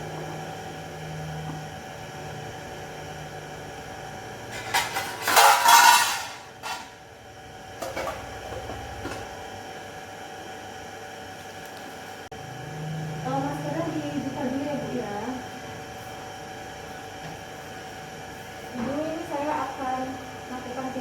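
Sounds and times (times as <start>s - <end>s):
objects clattering and knocking: 4.5s - 7.0s, 7.8s - 9.4s.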